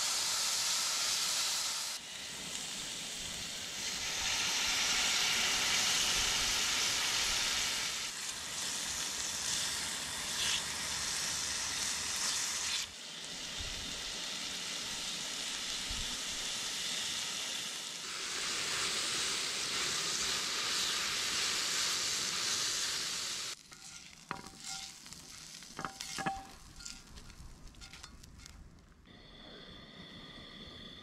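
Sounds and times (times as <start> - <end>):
food sizzling in a pan: 0.0 - 29.0
light clinks and taps: 23.7 - 28.6.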